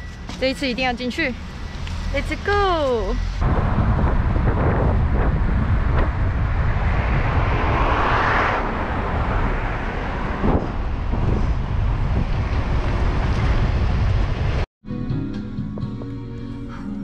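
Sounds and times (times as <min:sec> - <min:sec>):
car engine and road rumble: 0:00.0 - 0:14.7
wind noise: 0:01.3 - 0:14.7.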